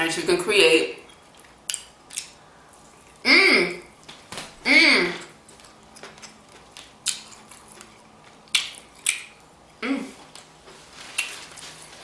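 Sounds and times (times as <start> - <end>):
crackly eating smacks: 1.3 - 2.4, 5.2 - 9.4.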